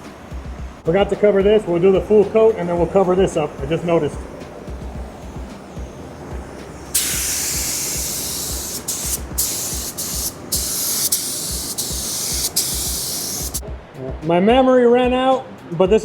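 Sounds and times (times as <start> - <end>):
paint spray gun hissing: 0.9 - 13.6.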